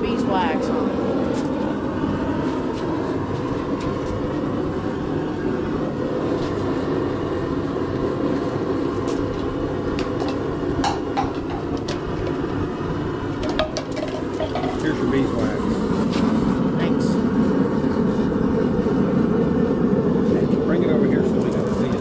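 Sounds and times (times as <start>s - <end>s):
forge roaring: 0.0s - 22.0s.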